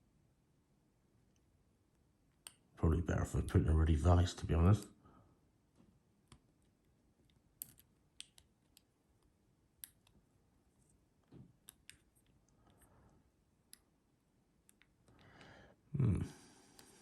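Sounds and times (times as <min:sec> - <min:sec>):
lock pick clicking in a padlock: 0:07.3 - 0:08.9.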